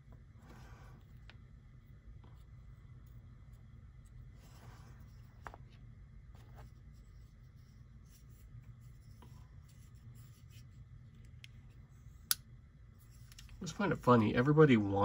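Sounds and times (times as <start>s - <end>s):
low steady hum: 0.0s - 15.0s
soft rub of knife handling: 2.5s - 12.3s, 12.9s - 14.3s.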